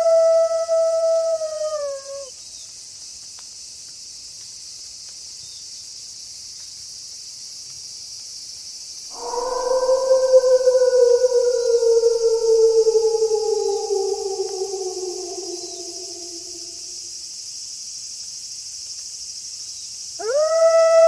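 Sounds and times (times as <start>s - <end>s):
wolf howling: 0.0s - 2.3s, 9.2s - 17.0s, 20.2s - 21.0s
steady high hiss: 8.8s - 17.3s.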